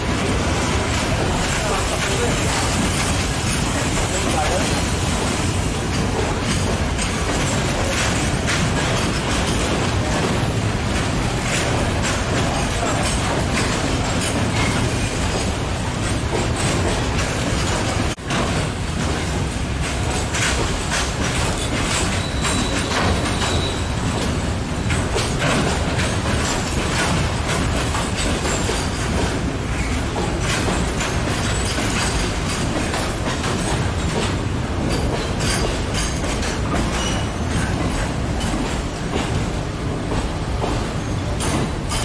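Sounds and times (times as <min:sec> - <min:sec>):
train wheels clattering: 0:00.0 - 0:42.0
thin wheel squeal: 0:22.1 - 0:24.0.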